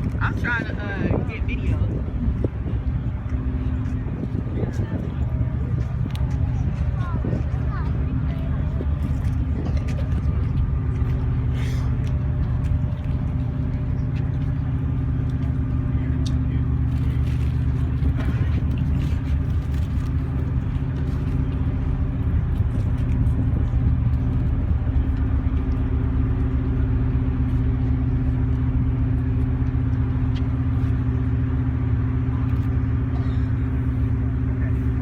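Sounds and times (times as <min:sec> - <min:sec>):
low engine hum: 0:00.0 - 0:35.0.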